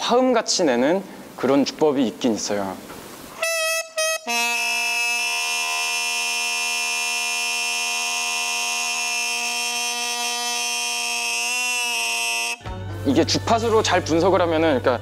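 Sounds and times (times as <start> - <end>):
double-reed oboe multiphonic note: 3.4 - 12.7.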